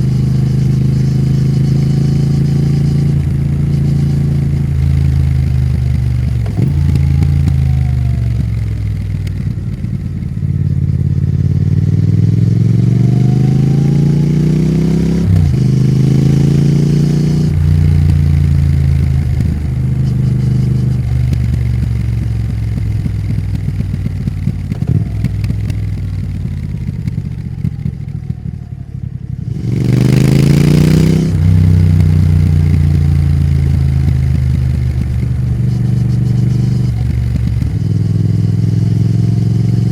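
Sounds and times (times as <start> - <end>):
gear change: 0.0 - 11.2, 11.9 - 28.6, 29.7 - 39.9
motorcycle engine revving: 0.0 - 39.9.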